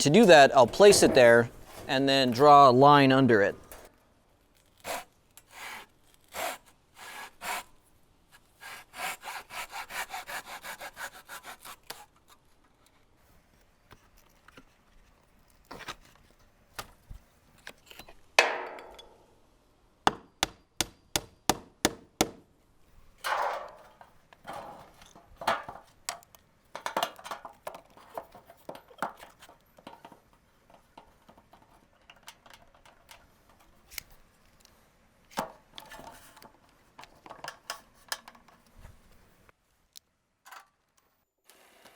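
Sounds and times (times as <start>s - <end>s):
hand saw cutting wood: 4.8s - 12.2s.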